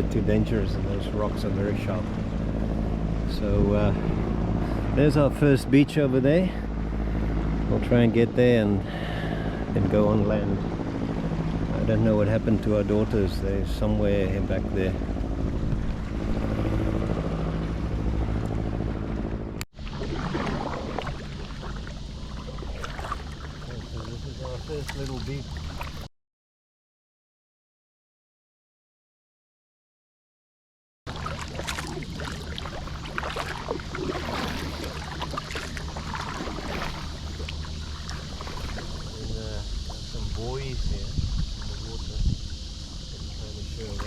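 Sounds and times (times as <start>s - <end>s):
motor hum: 0.0s - 26.1s, 31.1s - 44.0s
wind: 0.0s - 26.1s, 31.1s - 44.0s
water splashing against a kayak: 19.7s - 26.1s, 31.1s - 44.0s.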